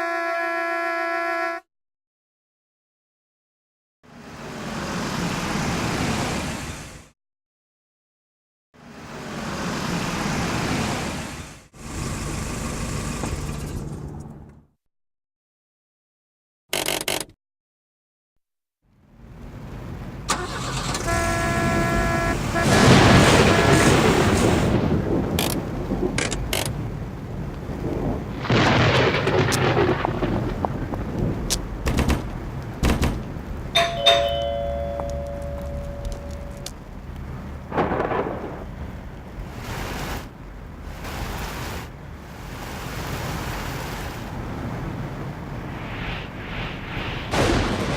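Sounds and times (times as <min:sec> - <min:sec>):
rain: 0:18.9 - 0:33.8, 0:34.4 - 0:47.9
sharp thunder cracks: 0:22.6 - 0:26.2, 0:27.8 - 0:33.3, 0:37.7 - 0:38.9, 0:47.2 - 0:47.9
thunder rolling: 0:22.6 - 0:26.2, 0:26.8 - 0:33.7, 0:37.5 - 0:39.4, 0:44.4 - 0:47.9
two-note chime: 0:33.8 - 0:36.7.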